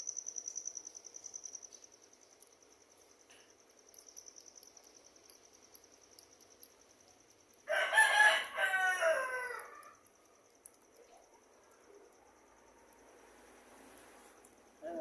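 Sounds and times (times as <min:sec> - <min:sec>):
crickets chirring: 0:00.0 - 0:15.0
rooster crowing: 0:07.7 - 0:10.0.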